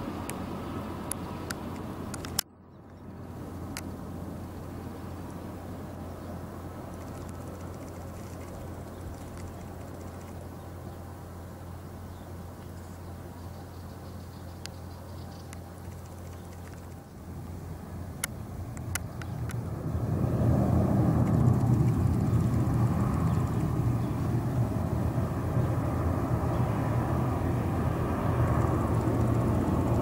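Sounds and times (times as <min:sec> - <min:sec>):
airliner engines rumbling: 0:00.0 - 0:30.0
faint clicks: 0:01.1 - 0:03.0, 0:06.9 - 0:10.4, 0:14.6 - 0:17.6, 0:18.2 - 0:19.6.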